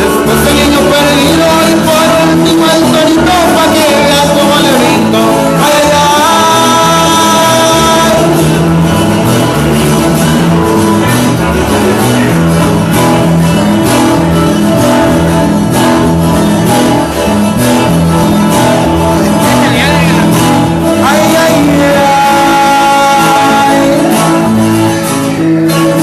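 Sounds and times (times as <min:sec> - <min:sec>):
person singing: 0:00.0 - 0:09.0, 0:18.1 - 0:26.0
loud band music: 0:00.0 - 0:26.0.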